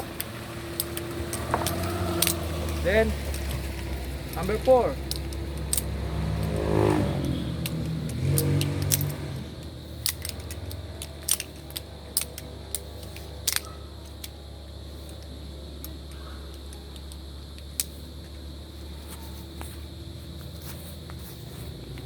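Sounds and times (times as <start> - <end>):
steady low hum: 0.0 - 22.0
metallic clicks of knife flipping: 7.6 - 9.2, 10.0 - 14.4.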